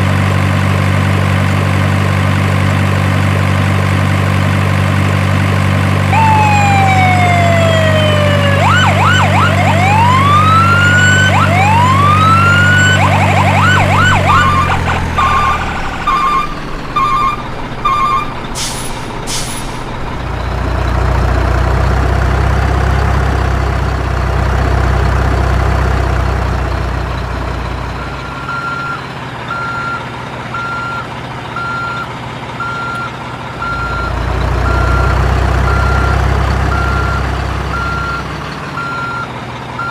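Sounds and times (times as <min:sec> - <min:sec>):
siren-like sweeps: 0:06.1 - 0:21.0
reversing beeps: 0:28.0 - 0:30.0, 0:30.6 - 0:31.0, 0:31.6 - 0:39.9.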